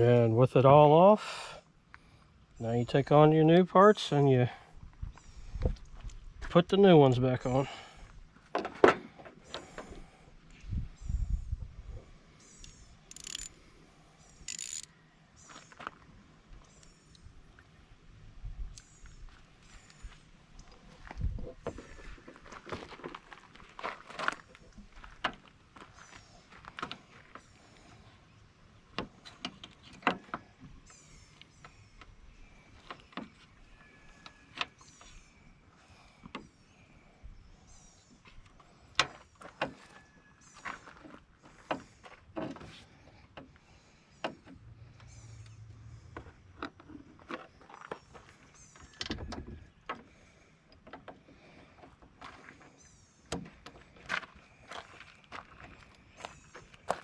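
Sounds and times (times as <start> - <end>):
tools and metal parts clicking: 12.6 - 13.6, 14.3 - 14.9.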